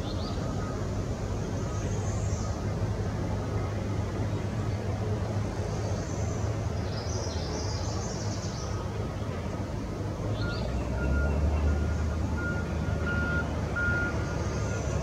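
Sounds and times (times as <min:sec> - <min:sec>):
vehicle engine rumble: 0:00.0 - 0:15.0
reversing alarm beeping: 0:11.0 - 0:14.9.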